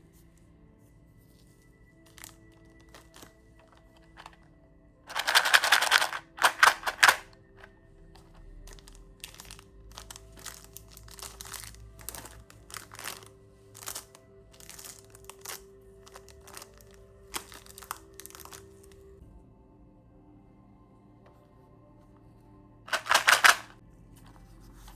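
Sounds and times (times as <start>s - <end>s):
plastic wrapper crinkling: 2.1s - 4.4s, 5.1s - 7.2s, 8.2s - 19.0s, 22.9s - 23.7s.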